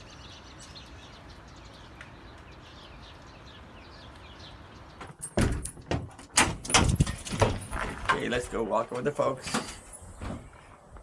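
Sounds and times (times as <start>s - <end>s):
small birds chirping: 0.0s - 5.2s.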